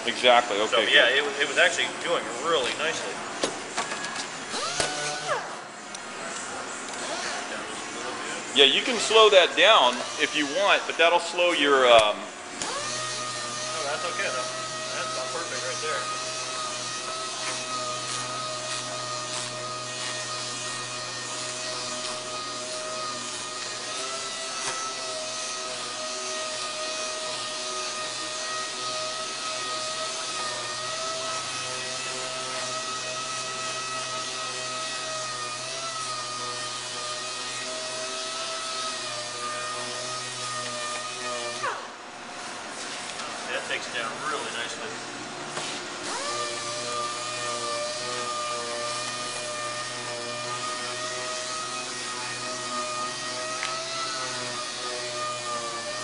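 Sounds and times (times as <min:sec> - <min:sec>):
orbital sander whining: 0:04.5 - 0:05.7, 0:08.5 - 0:41.9, 0:46.0 - 0:56.0
abrasive disc sanding: 0:12.7 - 0:41.7.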